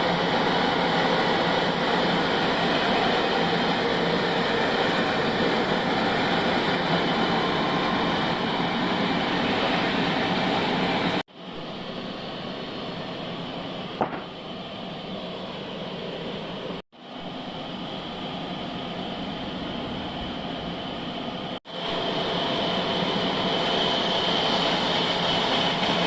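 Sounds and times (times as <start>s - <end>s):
bandsaw sawmill running: 0.0s - 17.8s, 18.8s - 26.0s
short knock: 14.0s - 14.3s.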